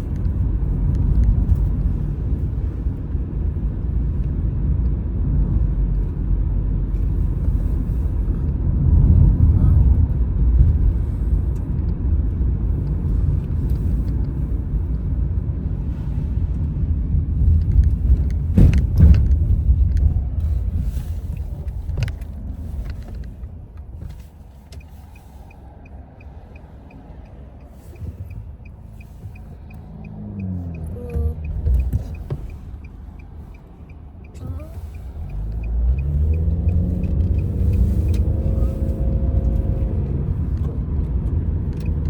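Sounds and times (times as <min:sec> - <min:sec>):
low vehicle-like rumble: 0:00.0 - 0:42.0
light regular ticking: 0:21.2 - 0:42.0.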